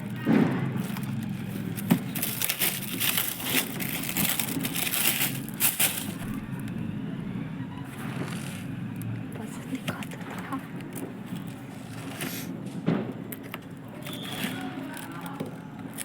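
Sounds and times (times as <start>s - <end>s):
firework bangs: 0.2s - 0.8s, 12.5s - 13.4s.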